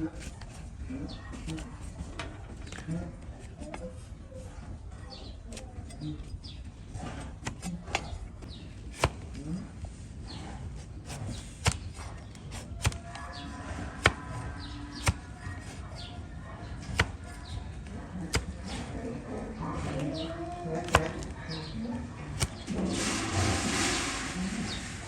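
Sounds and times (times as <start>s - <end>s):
hoof trimming snaps: 19.8s - 21.3s.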